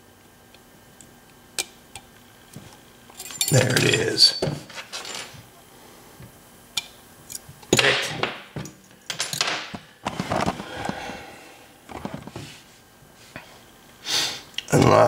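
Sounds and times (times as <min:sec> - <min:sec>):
handling noises: 0:02.6 - 0:05.5, 0:07.3 - 0:13.4.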